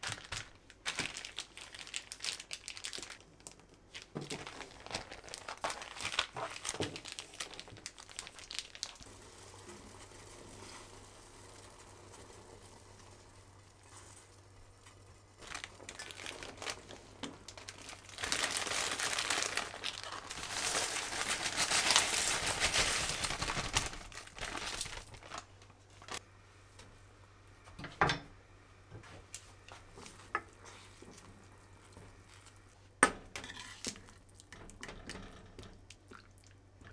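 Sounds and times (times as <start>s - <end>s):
packaging crinkling and rustling: 0.0s - 9.1s, 15.4s - 26.2s.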